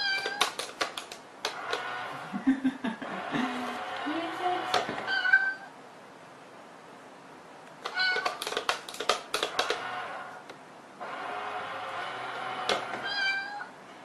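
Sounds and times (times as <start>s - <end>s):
cat meowing: 0.0s - 0.6s, 5.0s - 5.8s, 7.8s - 8.5s, 13.0s - 13.7s
sharp clicks and knocks: 0.0s - 1.9s, 7.7s - 10.6s.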